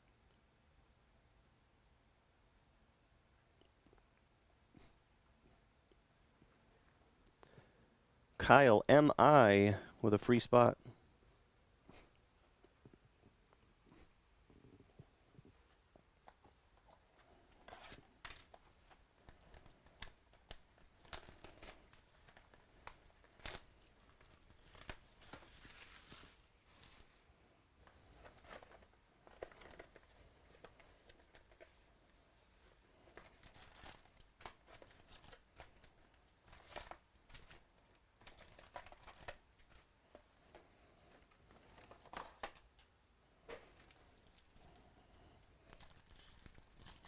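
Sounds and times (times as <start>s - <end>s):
wrapper tearing and crinkling: 17.7s - 27.2s, 33.1s - 39.9s, 43.8s - 44.8s, 45.6s - 47.0s.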